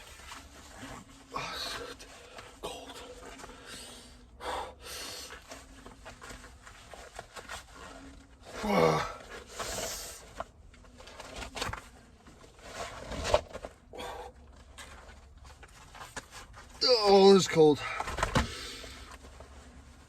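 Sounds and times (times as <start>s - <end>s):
man breathing hard: 1.3s - 5.6s
rustling: 5.3s - 20.0s
man groaning: 8.5s - 9.2s.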